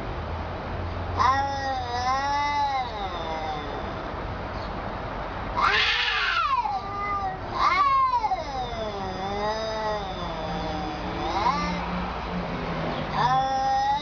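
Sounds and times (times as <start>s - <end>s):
cat yowling: 1.2s - 4.1s, 5.6s - 12.0s, 13.1s - 14.0s.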